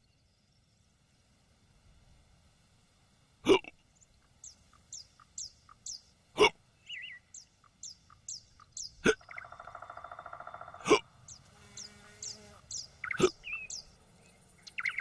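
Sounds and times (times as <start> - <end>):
old man hiccuping: 3.4 - 3.8, 6.3 - 6.6, 9.0 - 9.3, 10.8 - 11.2, 13.0 - 13.5
bird chirping: 3.9 - 6.2, 6.8 - 15.0.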